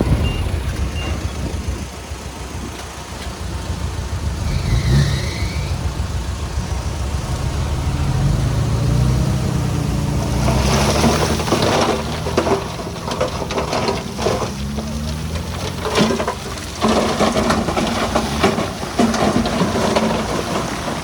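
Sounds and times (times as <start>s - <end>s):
diesel engine running: 0.0s - 21.0s
stones clattering and crunching: 10.0s - 21.0s.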